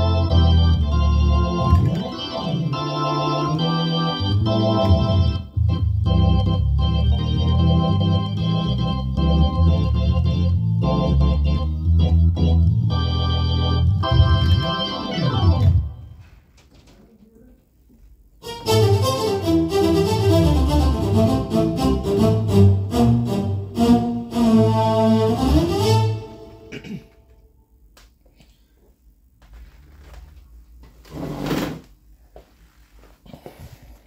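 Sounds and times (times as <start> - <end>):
keyboard playing organ chords: 0.0 - 16.2, 18.4 - 26.8.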